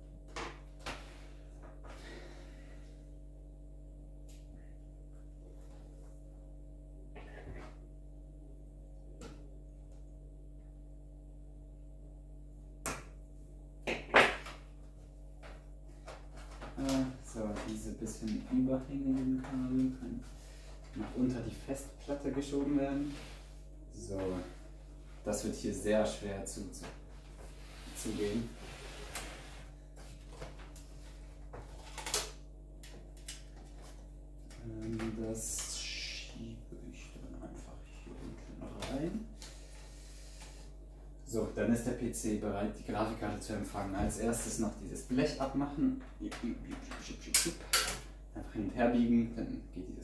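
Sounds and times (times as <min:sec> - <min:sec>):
low hum: 0:00.0 - 0:50.0
clicks of cables and parts handled: 0:31.8 - 0:35.7.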